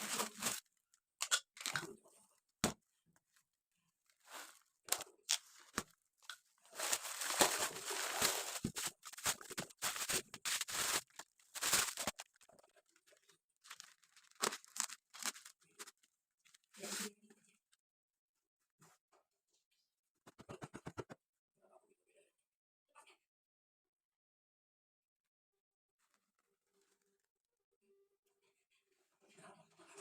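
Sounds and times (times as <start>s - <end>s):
tissue packaging tearing: 0.0s - 0.7s, 6.7s - 12.5s, 13.6s - 15.9s.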